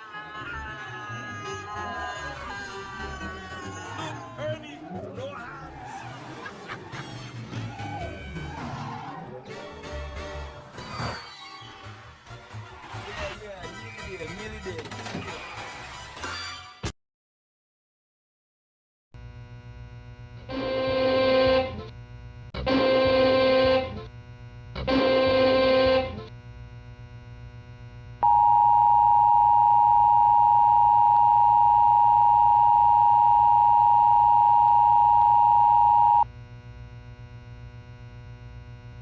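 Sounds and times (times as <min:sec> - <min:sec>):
low hum: 0:19.2 - 0:39.0
steady attention tone: 0:28.2 - 0:36.3.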